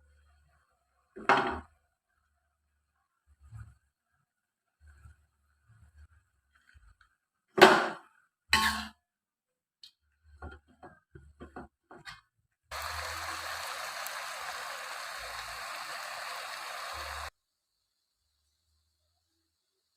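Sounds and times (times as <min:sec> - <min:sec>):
water running from a tap: 0:12.7 - 0:17.3.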